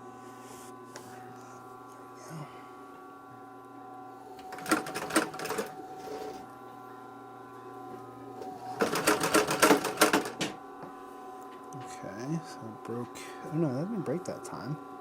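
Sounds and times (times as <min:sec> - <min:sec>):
sewing machine hum: 0:04.4 - 0:06.4, 0:08.6 - 0:10.5.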